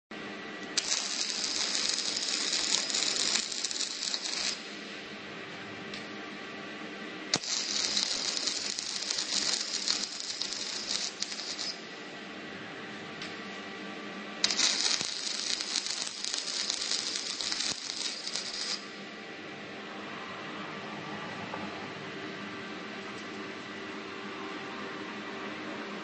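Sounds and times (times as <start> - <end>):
machine hum: 0.1 - 26.0
arc welding crackling: 0.6 - 5.0, 7.3 - 12.1, 14.4 - 19.0.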